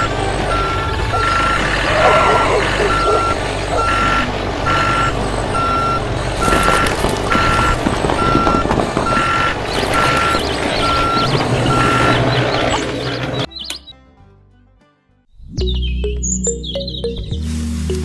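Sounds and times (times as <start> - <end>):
reversing alarm beeping: 0.0 - 12.8
low running rumble: 0.0 - 13.5.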